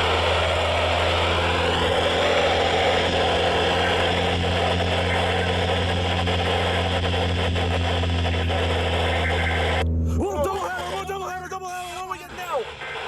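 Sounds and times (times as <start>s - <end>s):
electrical hum: 0.0s - 13.0s
radio static hiss: 3.8s - 13.0s.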